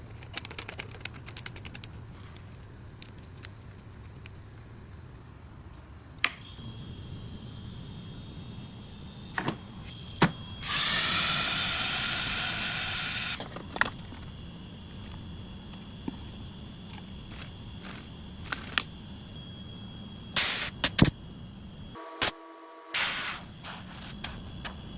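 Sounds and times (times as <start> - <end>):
pressurised solvent hissing through tubing: 10.6 - 13.4.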